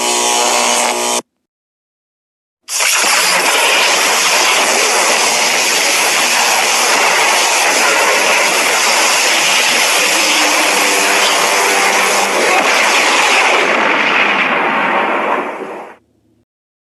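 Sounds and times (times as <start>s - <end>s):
loud rushing hiss: 2.7s - 16.0s.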